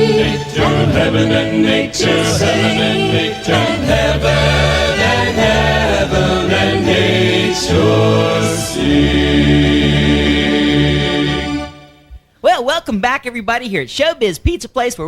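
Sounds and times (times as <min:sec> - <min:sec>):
choir singing in harmony: 0:00.0 - 0:12.1
backing music: 0:00.0 - 0:12.3.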